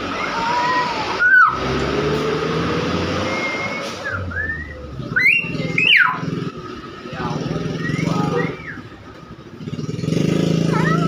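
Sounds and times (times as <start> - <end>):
bird whistles sweeping upward: 3.1 - 6.1.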